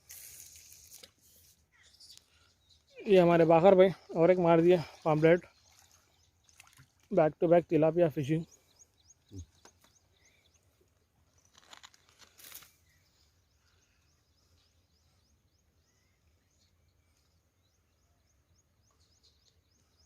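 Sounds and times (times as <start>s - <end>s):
brief rustles: 11.3s - 13.0s.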